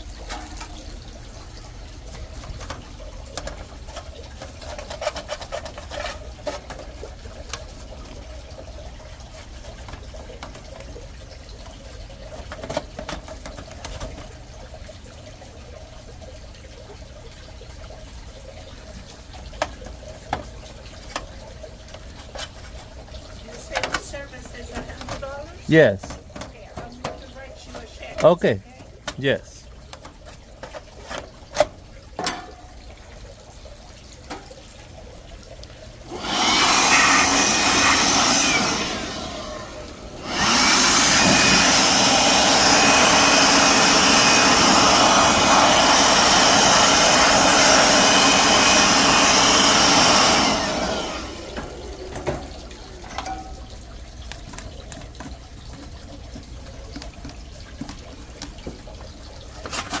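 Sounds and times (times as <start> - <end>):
cleaning spray hissing: 36.1 - 51.5.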